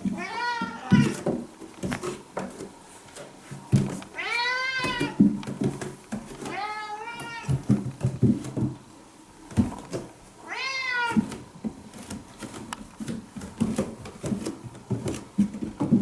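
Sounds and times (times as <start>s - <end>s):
cat meowing: 0.2s - 1.2s, 4.2s - 5.2s, 6.5s - 7.6s, 10.4s - 11.3s.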